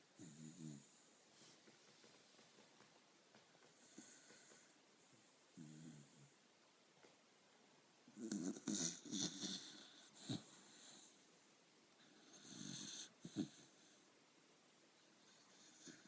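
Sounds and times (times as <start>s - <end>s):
dog snoring: 0.2s - 1.0s, 3.8s - 4.7s, 5.5s - 6.3s, 8.2s - 11.2s, 12.0s - 14.0s, 15.3s - 16.0s.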